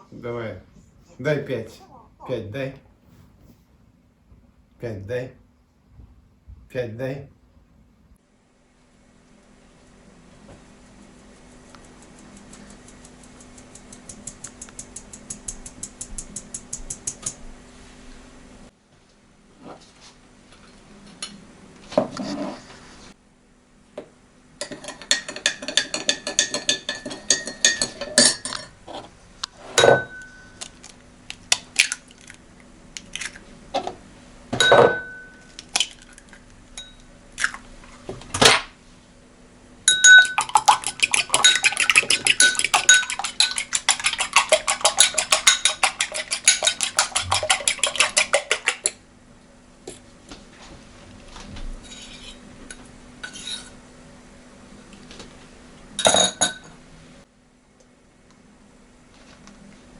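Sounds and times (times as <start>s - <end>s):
utensil beating against bowl: 11.5s - 17.4s, 39.9s - 49.0s
ringing dish clinks: 34.6s - 35.4s, 39.9s - 40.4s, 56.0s - 56.7s.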